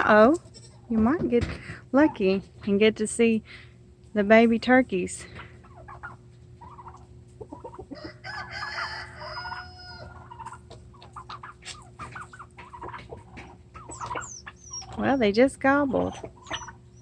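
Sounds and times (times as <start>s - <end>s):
chickens clucking: 5.1s - 17.0s
turkeys gobbling: 5.4s - 17.0s.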